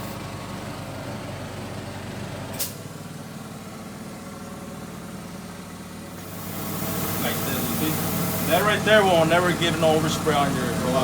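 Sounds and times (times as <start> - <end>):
air compressor humming: 0.0 - 0.3, 6.1 - 11.0
light machine hum: 6.1 - 11.0
released air hiss: 6.2 - 8.7.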